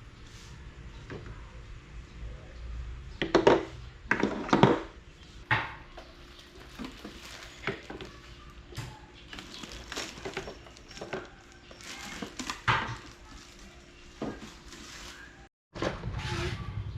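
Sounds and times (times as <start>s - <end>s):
hard objects knocking and clattering: 3.2s - 13.2s.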